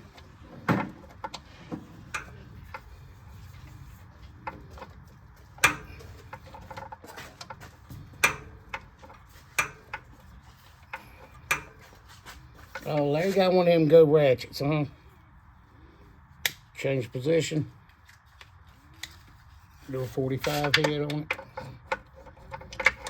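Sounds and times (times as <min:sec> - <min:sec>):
wrench clicking on metal bolt: 0:05.6 - 0:06.4, 0:08.2 - 0:10.1, 0:20.4 - 0:23.0.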